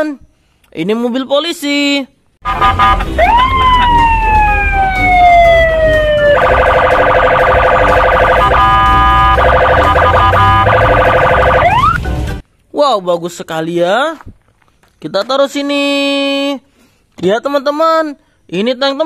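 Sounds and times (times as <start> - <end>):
police siren wailing and yelping: 2.6 - 12.0.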